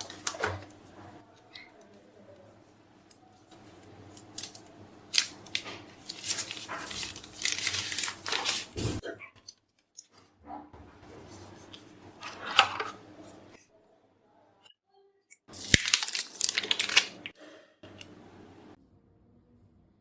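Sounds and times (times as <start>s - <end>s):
plastic and paper crinkling: 0.0s - 2.0s, 3.4s - 9.0s, 15.5s - 17.4s.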